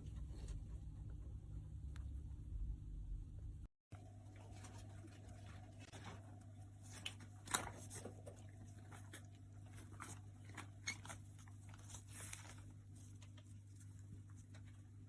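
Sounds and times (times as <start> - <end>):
low hum: 0.0 - 6.7.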